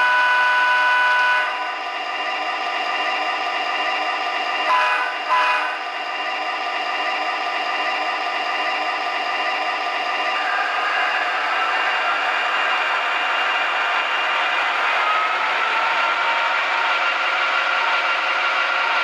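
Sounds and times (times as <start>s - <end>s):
locomotive horn toots: 0.0s - 1.7s, 4.6s - 5.8s
model locomotive diesel engine sound: 0.0s - 19.0s.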